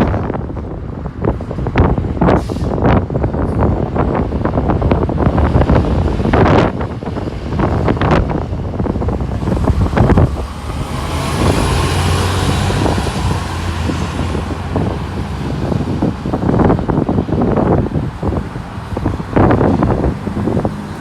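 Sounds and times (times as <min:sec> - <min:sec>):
bus engine drone: 0:00.0 - 0:21.0
wind buffeting microphone: 0:00.0 - 0:21.0.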